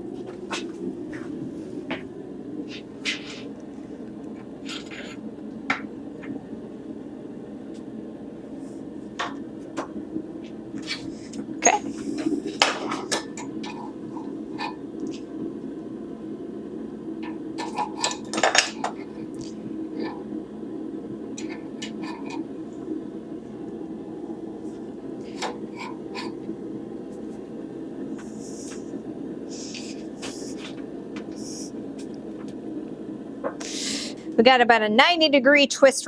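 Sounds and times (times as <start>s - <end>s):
forge hum: 0.0s - 36.0s
short hisses: 33.6s - 34.3s.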